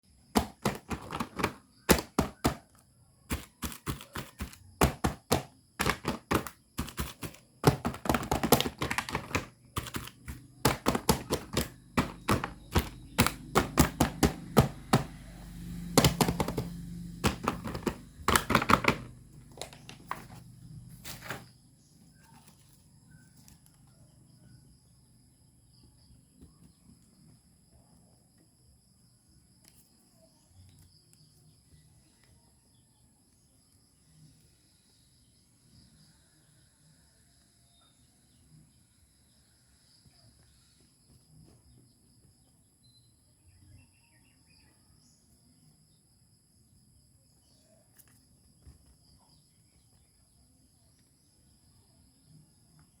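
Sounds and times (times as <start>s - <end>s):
clicks and taps of unboxing toys: 0.4s - 2.7s, 3.3s - 15.2s, 15.9s - 20.4s.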